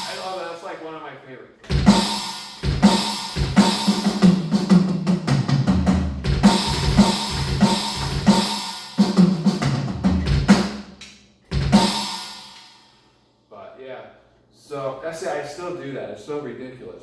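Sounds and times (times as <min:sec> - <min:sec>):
cymbal crash ringing out: 0:00.0 - 0:00.6, 0:11.6 - 0:13.1
electronic drum kit groove: 0:00.0 - 0:00.7, 0:01.6 - 0:12.7.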